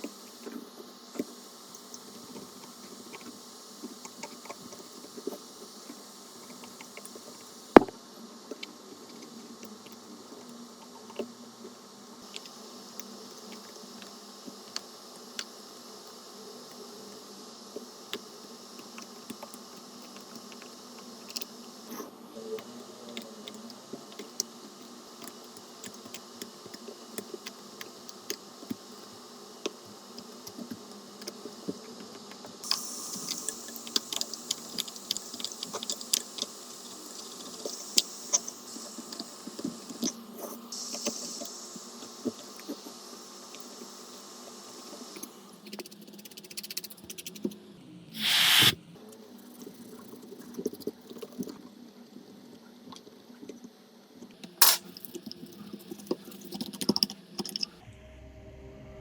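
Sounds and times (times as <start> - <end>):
high hiss: 40.7 - 45.3, 48.1 - 48.8
steady low hum: 57.7 - 59.0.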